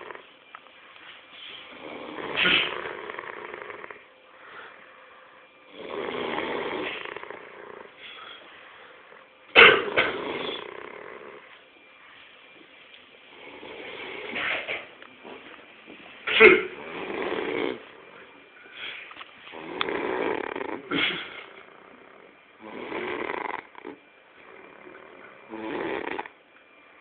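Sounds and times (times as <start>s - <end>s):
snoring: 0.0s - 0.3s, 1.6s - 4.1s, 5.7s - 8.2s, 9.8s - 11.5s, 13.3s - 14.6s, 16.7s - 18.1s, 19.5s - 26.4s.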